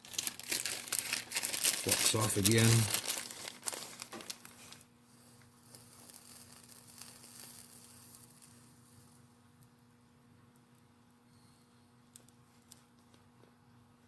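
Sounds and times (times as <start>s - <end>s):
torch flame hissing: 3.8s - 9.3s.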